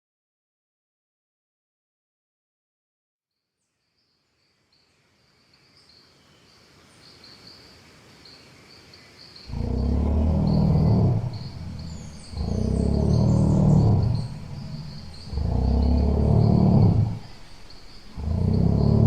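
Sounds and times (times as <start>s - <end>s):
loud deep growl: 9.5s - 19.0s
steady high chirping: 9.5s - 19.0s.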